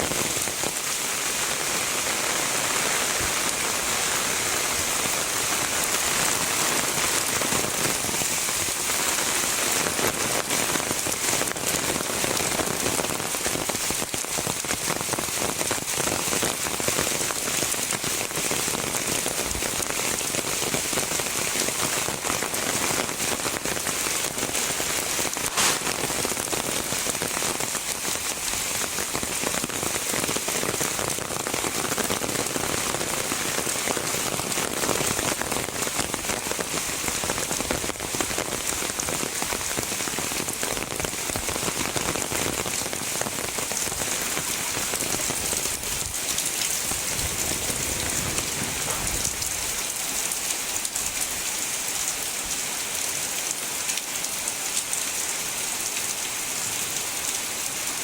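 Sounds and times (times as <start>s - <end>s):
heavy rain pattering: 0.0s - 58.0s.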